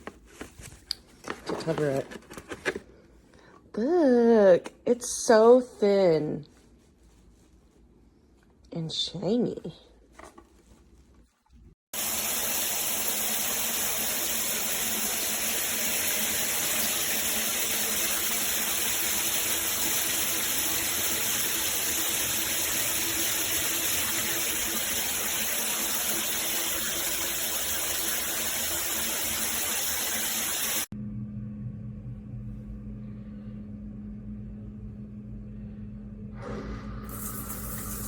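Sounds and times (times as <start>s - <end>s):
shower head spraying water: 12.0s - 30.9s, 37.0s - 38.0s.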